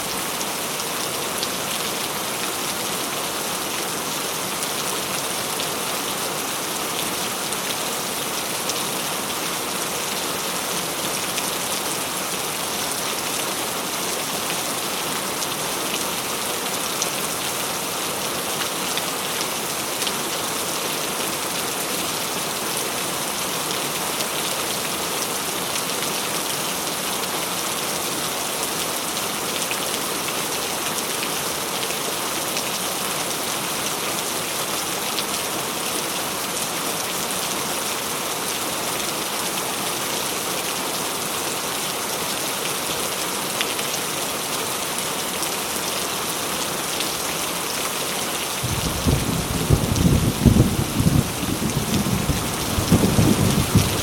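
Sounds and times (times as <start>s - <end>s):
heavy rain falling: 0.0s - 54.0s
low rumble of thunder: 48.6s - 54.0s.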